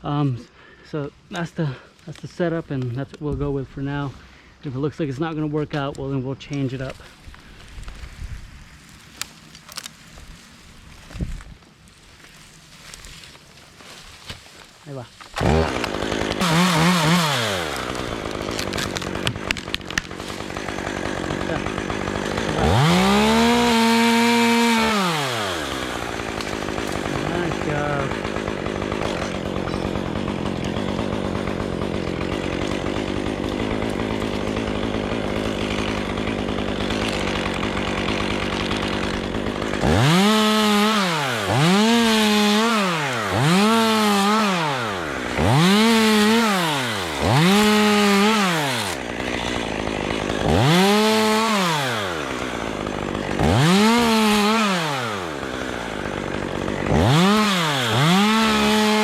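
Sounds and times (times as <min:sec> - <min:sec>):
chainsaw running and revving: 0:08.9 - 0:11.2, 0:12.0 - 0:59.0.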